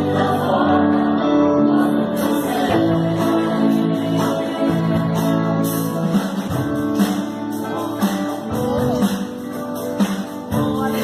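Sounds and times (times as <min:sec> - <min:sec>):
acoustic guitar strumming song: 0:00.0 - 0:11.0.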